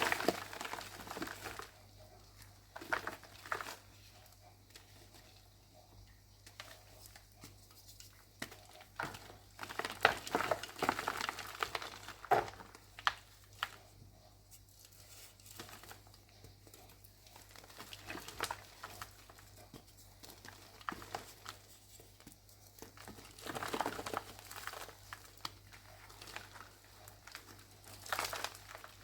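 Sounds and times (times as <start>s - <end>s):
chalk blocks crunching: 6.4s - 29.0s.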